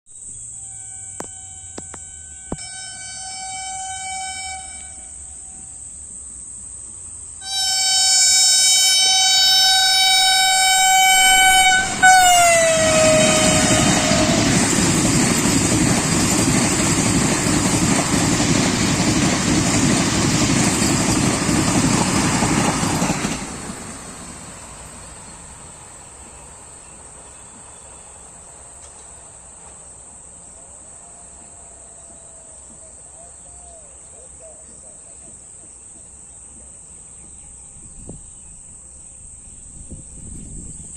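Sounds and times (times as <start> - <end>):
crickets chirping: 0.1 - 40.9
train horn: 0.4 - 5.8, 7.4 - 14.9
passing train rushing: 0.7 - 32.8.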